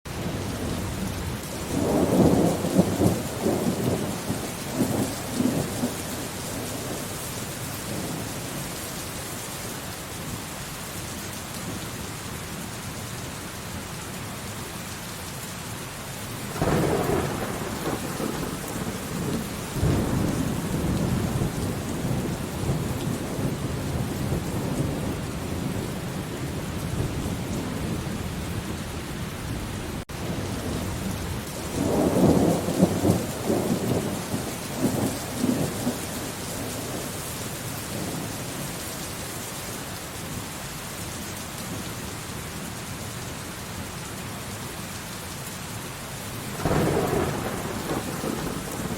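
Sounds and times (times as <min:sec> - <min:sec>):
steady rain: 0:00.1 - 0:48.9
thunder rumbling: 0:00.3 - 0:07.0, 0:16.5 - 0:28.9, 0:29.5 - 0:37.1, 0:46.5 - 0:48.9
sudden thunderclap: 0:16.5 - 0:28.0, 0:46.6 - 0:48.9.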